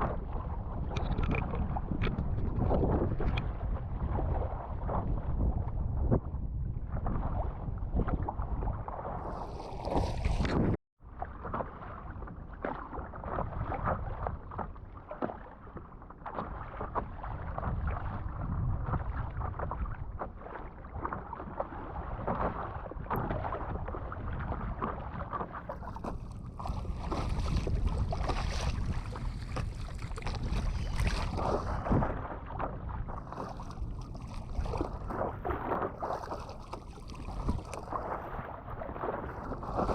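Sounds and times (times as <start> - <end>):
wind buffeting microphone: 0.0 - 10.8, 17.2 - 21.4, 22.0 - 39.9
water splashing and slapping: 0.0 - 39.9.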